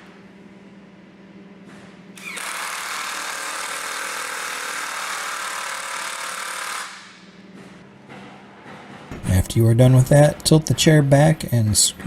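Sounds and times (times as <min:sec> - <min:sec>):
power drill driving a screw: 0:02.2 - 0:07.2.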